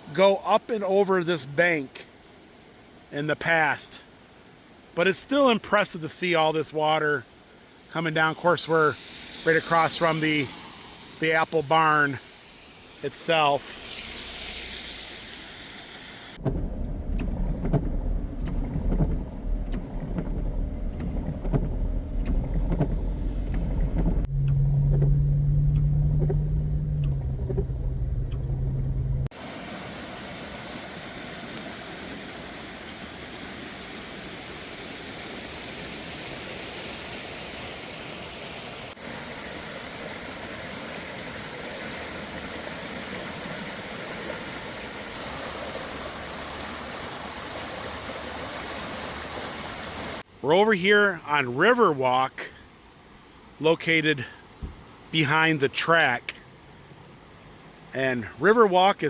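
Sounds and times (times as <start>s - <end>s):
flooding river rushing: 0.0s - 16.4s, 29.3s - 52.3s
car engine drone inside cabin: 16.4s - 29.3s.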